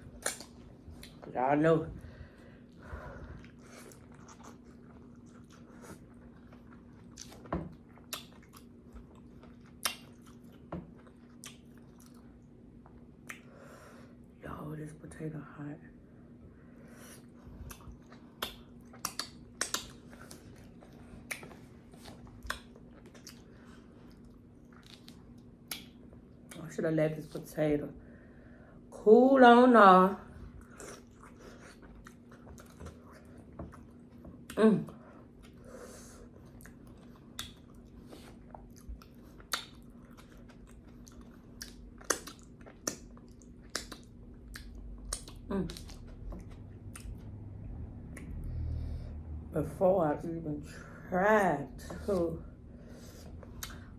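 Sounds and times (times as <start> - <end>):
faint steady hum: 0.0 - 53.9
mouth smacking while chewing: 0.1 - 1.2, 3.3 - 13.5, 17.2 - 26.6, 36.3 - 47.3, 53.2 - 53.9
lip clicks: 18.4 - 20.0, 37.3 - 37.7, 41.6 - 47.2, 48.1 - 48.4, 53.5 - 53.9.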